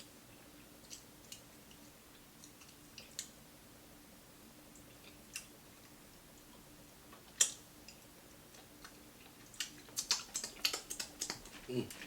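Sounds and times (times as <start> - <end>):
faint steady hum: 0.0 - 12.0
crunchy chewing of fried food: 4.7 - 12.0.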